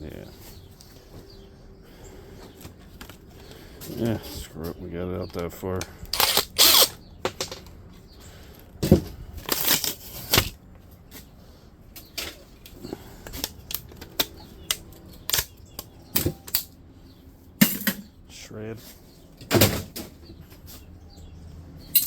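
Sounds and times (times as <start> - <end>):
tools and parts clanking: 3.8 - 8.1, 11.9 - 16.7, 17.6 - 18.2, 21.8 - 22.0.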